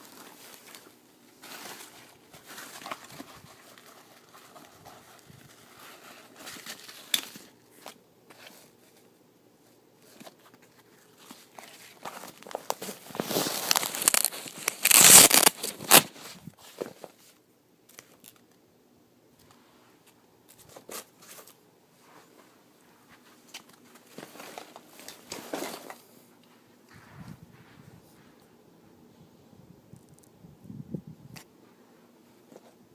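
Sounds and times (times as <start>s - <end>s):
rustling crinkling handling noise: 0.0s - 18.6s, 19.3s - 28.6s
tearing sound: 13.2s - 16.2s.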